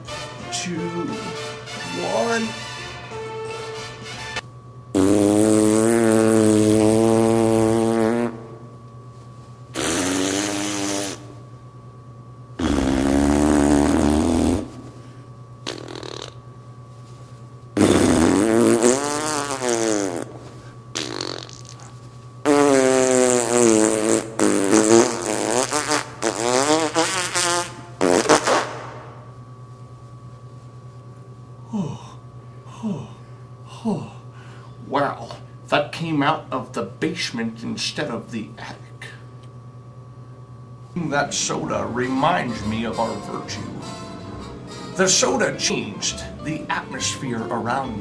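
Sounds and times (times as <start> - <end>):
loud fart noises: 4.9 - 8.6, 9.7 - 11.4, 12.6 - 15.0, 15.6 - 16.4, 17.8 - 29.2, 41.3 - 46.6.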